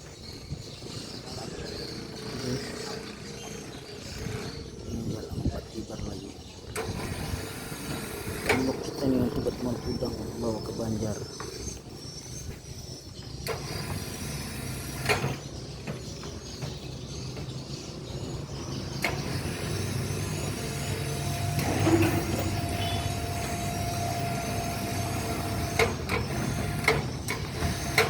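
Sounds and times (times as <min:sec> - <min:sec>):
machine engine running: 0:00.8 - 0:06.2, 0:17.9 - 0:28.0.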